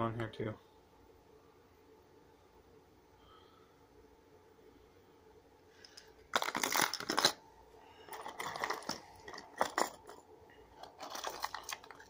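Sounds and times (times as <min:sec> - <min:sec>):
fishing tackle clattering in box: 0:06.3 - 0:07.4, 0:08.1 - 0:10.2, 0:10.8 - 0:12.0.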